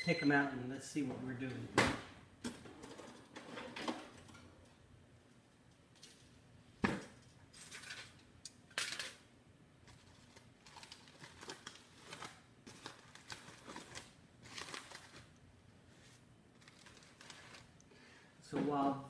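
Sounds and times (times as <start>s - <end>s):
foil crinkling and scraping: 9.9s - 15.3s, 16.5s - 17.7s.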